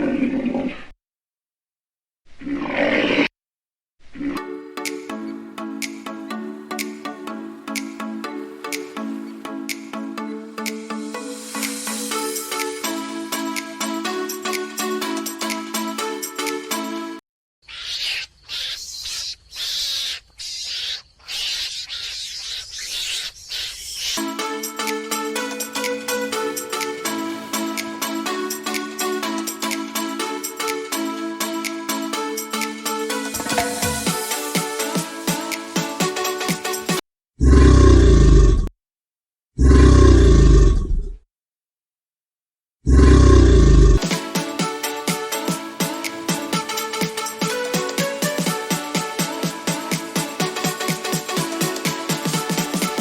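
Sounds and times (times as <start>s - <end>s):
animal hissing calls: 17.7s - 24.2s
animal roaring: 37.4s - 38.7s, 39.6s - 41.1s, 42.9s - 44.0s.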